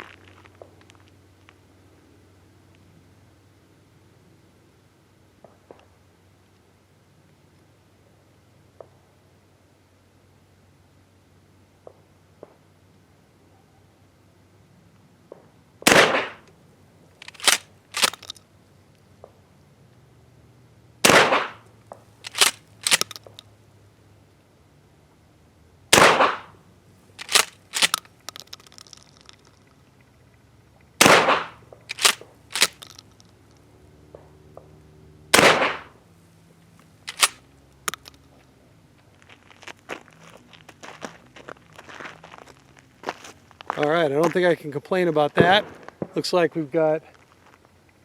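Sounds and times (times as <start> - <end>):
shotgun shots: 15.9 - 16.4, 21.0 - 21.6, 22.3 - 23.2, 25.9 - 26.5, 31.0 - 32.8, 35.3 - 35.9, 45.4 - 45.9
shotgun pump racking clack: 17.2 - 18.4, 22.2 - 23.4, 27.2 - 29.6, 31.0 - 33.3, 37.1 - 38.2.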